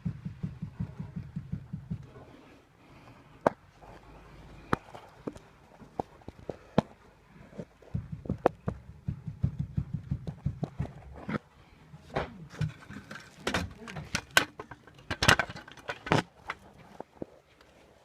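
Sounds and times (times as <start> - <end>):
car suspension knocking: 0.0 - 2.2, 7.9 - 11.2
low thuds: 0.0 - 2.3, 7.6 - 11.4.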